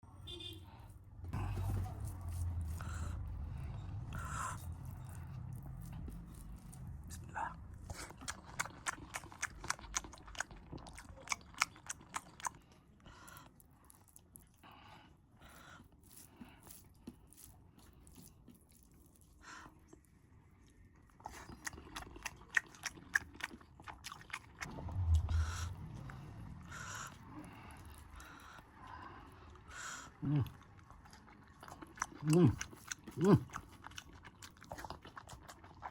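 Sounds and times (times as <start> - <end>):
chewing and biting: 1.3 - 35.9
loud low sound: 24.6 - 28.3.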